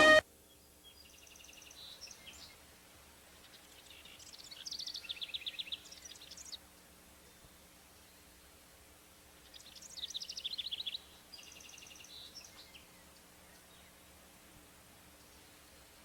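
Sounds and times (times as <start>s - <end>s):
songbird singing: 0.0s - 2.6s, 3.4s - 6.6s, 9.4s - 14.1s.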